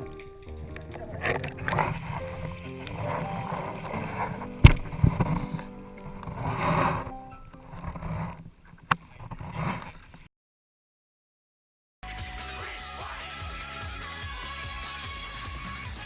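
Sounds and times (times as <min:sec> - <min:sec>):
water surging and sloshing: 0:00.0 - 0:10.0.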